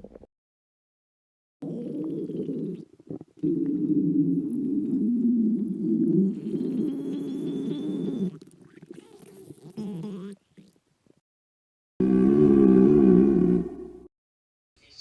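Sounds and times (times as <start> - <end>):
stomach growling: 1.6 - 11.2.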